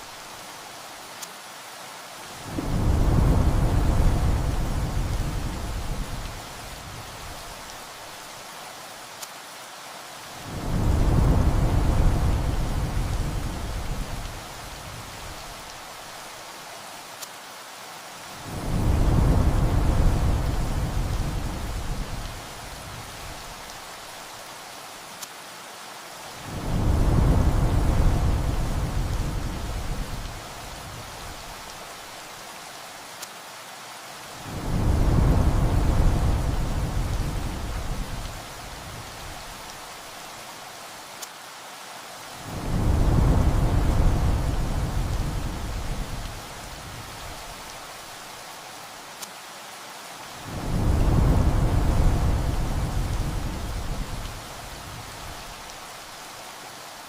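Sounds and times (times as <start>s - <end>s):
heavy rain: 0.0s - 57.0s
thunder rumbling: 2.5s - 6.3s, 26.5s - 31.4s, 34.5s - 39.1s, 42.5s - 47.0s, 50.5s - 55.4s
rolling thunder: 42.5s - 46.3s.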